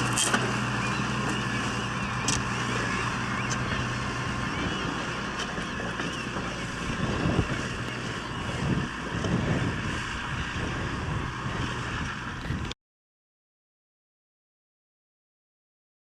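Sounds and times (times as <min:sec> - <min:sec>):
tractor diesel engine running: 0:00.0 - 0:12.8
wind gusting on microphone: 0:00.0 - 0:12.8.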